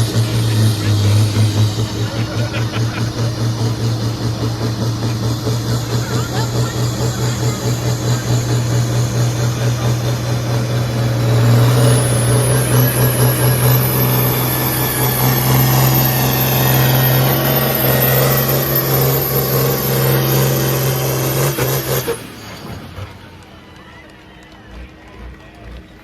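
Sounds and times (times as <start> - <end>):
tractor diesel engine under load: 0.0 - 26.0.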